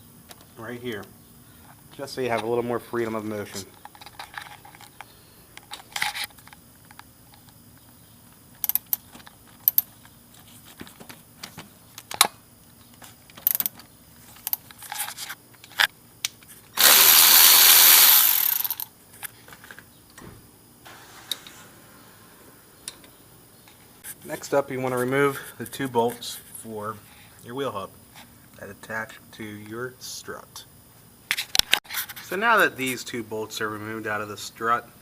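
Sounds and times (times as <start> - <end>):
power tool running: 16.8 - 18.8.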